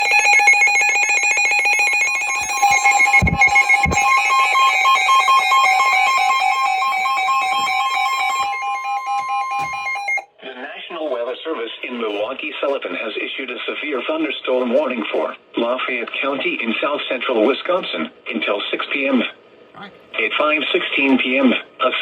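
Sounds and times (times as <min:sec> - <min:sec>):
electronic alarm tone: 0:00.0 - 0:10.3.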